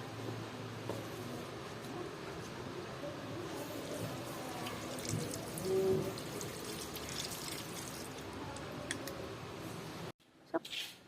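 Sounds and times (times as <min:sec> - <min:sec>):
hands washing with water: 0:04.0 - 0:08.7.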